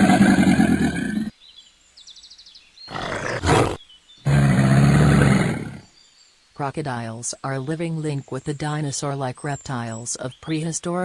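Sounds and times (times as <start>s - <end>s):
big cat growling: 0.0s - 1.3s, 2.9s - 5.9s.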